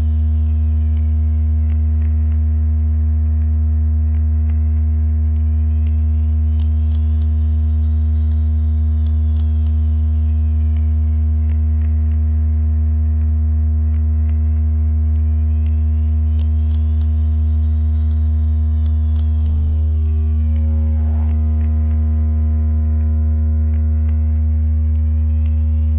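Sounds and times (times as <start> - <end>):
loud low-pitched hum: 0.0 - 25.9
faint sweeping tone: 19.3 - 25.9.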